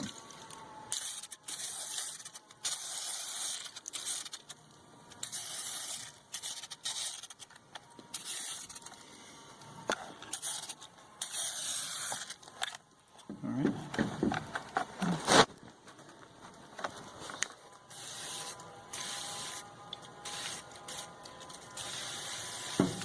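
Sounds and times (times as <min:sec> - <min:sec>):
aerosol can spraying: 0:00.9 - 0:04.6, 0:05.2 - 0:07.4, 0:08.1 - 0:08.8, 0:10.3 - 0:12.4, 0:17.9 - 0:21.2, 0:21.8 - 0:23.0.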